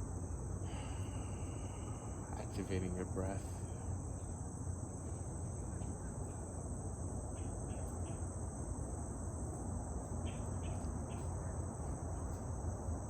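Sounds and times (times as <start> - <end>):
insect chorus: 0.0 - 13.0.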